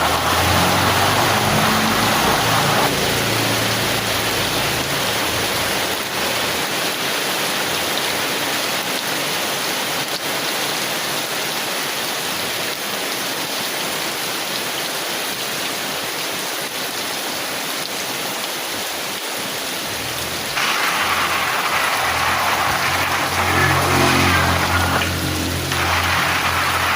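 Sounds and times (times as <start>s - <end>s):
heavy rain on tin umbrella: 0.0s - 26.9s
low rumble: 19.9s - 26.9s.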